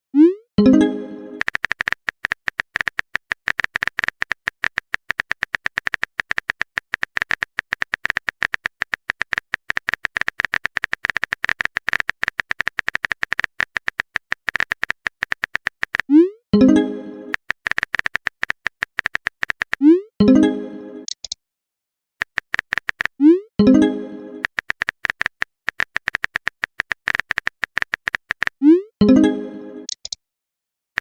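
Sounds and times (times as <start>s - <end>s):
rapid typing clicks: 1.4s - 16.1s, 17.3s - 19.8s, 22.2s - 23.2s, 24.4s - 28.6s.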